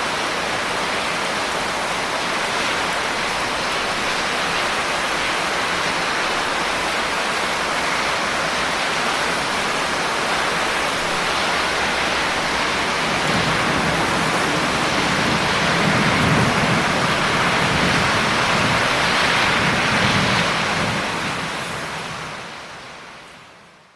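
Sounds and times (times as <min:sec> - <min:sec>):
heavy rain falling: 0:00.0 - 0:23.9
distant thunder rumble: 0:09.3 - 0:22.7.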